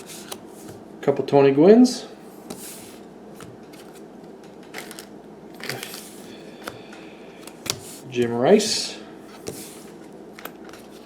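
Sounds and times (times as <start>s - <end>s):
cards rustling and flicking: 0.0s - 0.8s, 2.4s - 4.1s, 4.7s - 8.2s, 9.3s - 11.0s.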